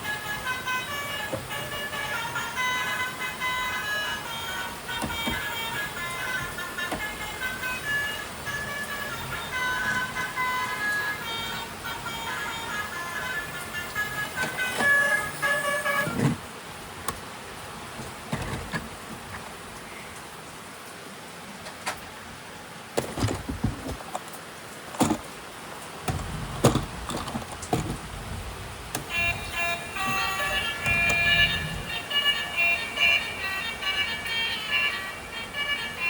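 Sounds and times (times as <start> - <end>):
plastic toys and packaging handled: 23.0 - 25.3, 26.0 - 31.9.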